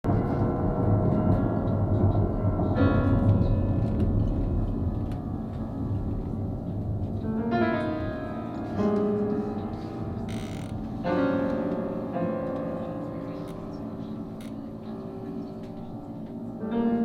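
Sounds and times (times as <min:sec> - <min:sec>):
piano playing slow chords: 0:00.7 - 0:17.0.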